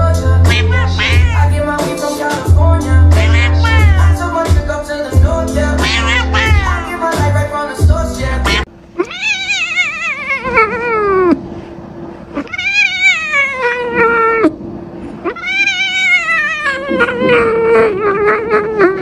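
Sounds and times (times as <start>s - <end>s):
cat yowling: 0.5s - 1.6s, 3.2s - 4.3s, 5.8s - 6.9s, 9.0s - 11.4s, 12.4s - 14.5s, 15.2s - 19.0s.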